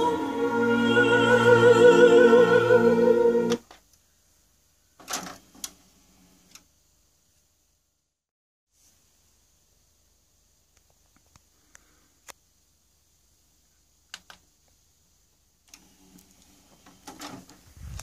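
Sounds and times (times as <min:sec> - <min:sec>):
operatic soprano singing: 0:00.0 - 0:03.6.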